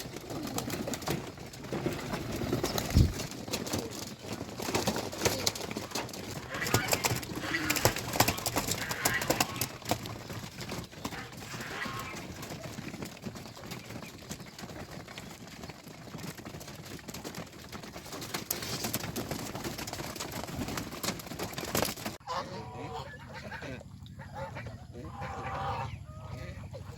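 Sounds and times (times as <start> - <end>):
birds pecking feed clicks: 0.0 - 22.4
geese and ducks calling: 4.9 - 12.7, 21.7 - 26.9.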